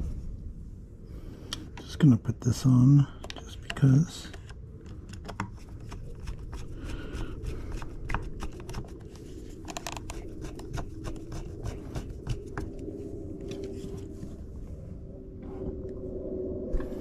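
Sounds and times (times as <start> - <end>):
plastic parts clicking and tapping: 3.2 - 6.6.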